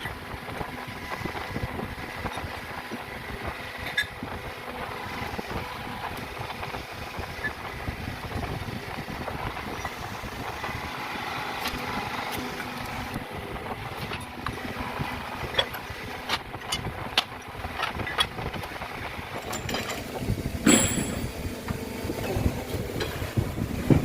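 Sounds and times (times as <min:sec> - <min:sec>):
engine rumbling: 0:00.0 - 0:24.0.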